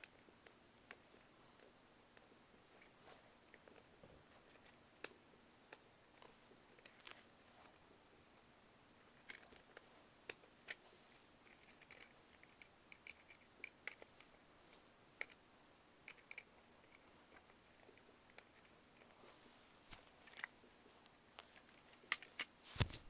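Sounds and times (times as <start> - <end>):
screwdriver clicking and scraping: 22.2 - 23.0.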